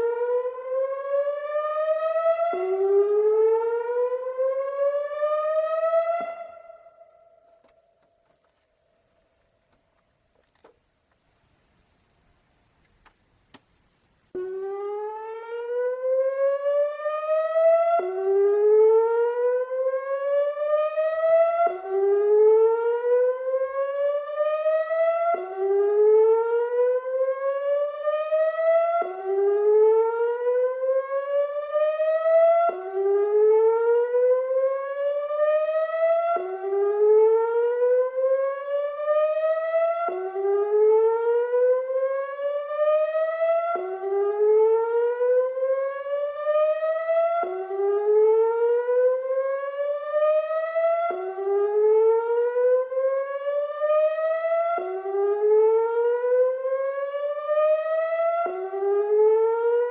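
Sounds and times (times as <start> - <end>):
electronic warning siren whooping: 0.0 - 8.0, 14.4 - 59.9.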